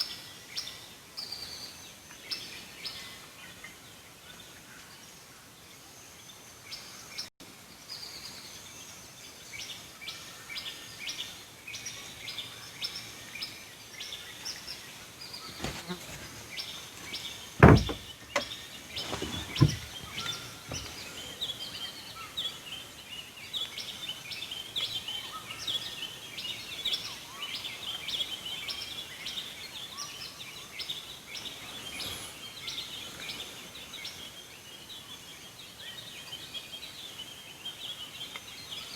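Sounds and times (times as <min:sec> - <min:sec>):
birds chirping: 0:15.4 - 0:21.4
knocks: 0:17.6 - 0:21.0.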